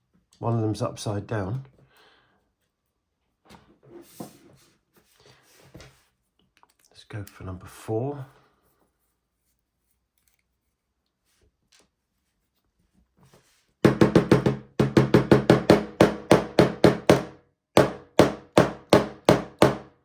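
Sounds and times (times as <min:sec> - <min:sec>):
lock cylinder knocking on hard surface: 0:13.8 - 0:19.8.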